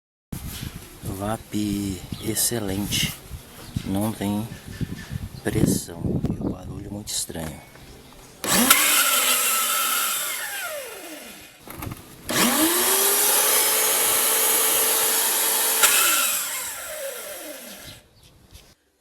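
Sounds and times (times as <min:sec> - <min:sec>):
pressure washer motor running: 0:08.4 - 0:18.0.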